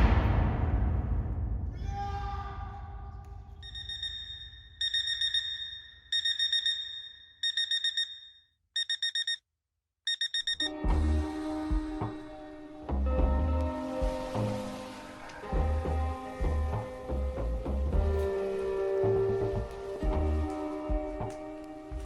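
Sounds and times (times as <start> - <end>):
alarm clock beeping: 3.6 - 9.4, 10.1 - 10.8.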